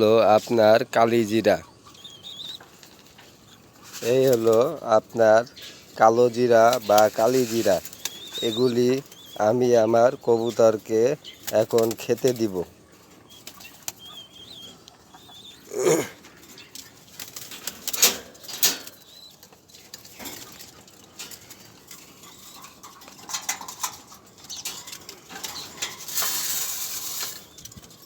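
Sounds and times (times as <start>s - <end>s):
pigeons flapping wings: 11.4s - 12.4s, 17.0s - 18.9s, 19.8s - 22.0s.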